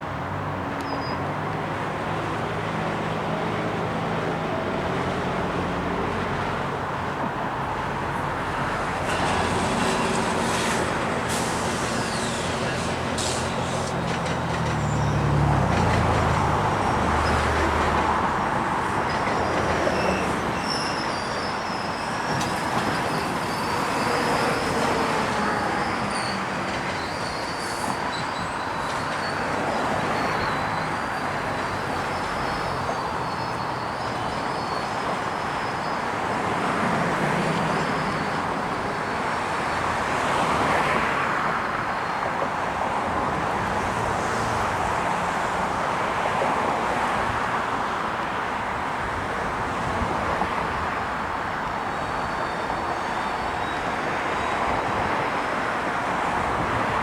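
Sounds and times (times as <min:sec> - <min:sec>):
train wheels rumbling on rails: 0:00.0 - 0:57.0
wheel squeal: 0:08.2 - 0:43.4, 0:51.6 - 0:56.7.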